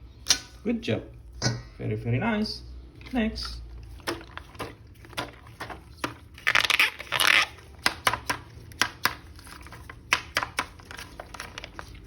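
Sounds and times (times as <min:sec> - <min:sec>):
plastic packaging crinkling: 0:05.9 - 0:07.9, 0:09.3 - 0:12.0
clicks and taps of packaging: 0:09.8 - 0:11.8.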